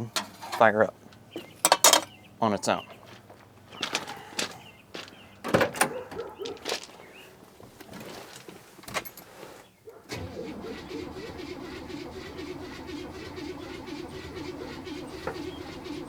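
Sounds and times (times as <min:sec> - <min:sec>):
starter cranking engine: 0:10.1 - 0:16.0.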